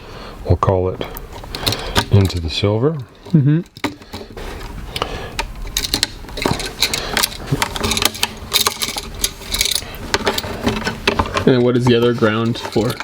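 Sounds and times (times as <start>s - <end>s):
copper wires clicking and scraping: 1.0s - 13.0s.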